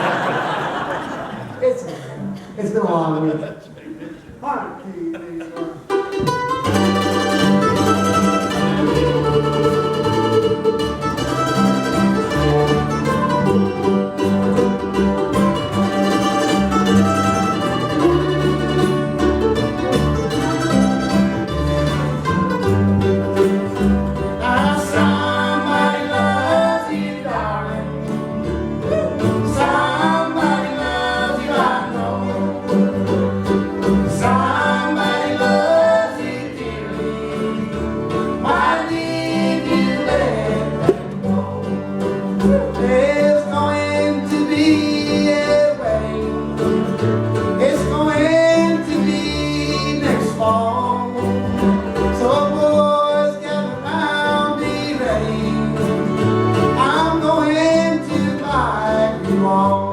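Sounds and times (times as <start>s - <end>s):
guitar: 0.0s - 2.7s, 5.5s - 59.9s
fiddle: 5.9s - 59.9s
vocal duet singing: 24.4s - 28.2s, 28.8s - 46.8s, 47.6s - 51.4s, 52.1s - 55.9s, 56.7s - 59.9s.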